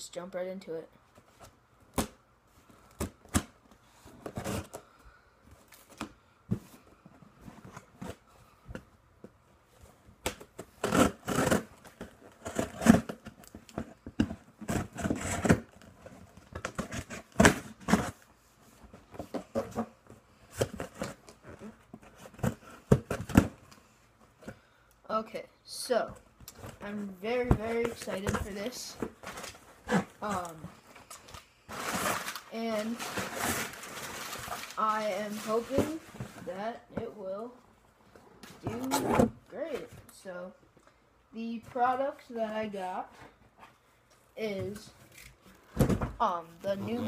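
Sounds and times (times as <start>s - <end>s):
shoe box packaging being handled: 31.7s - 36.5s.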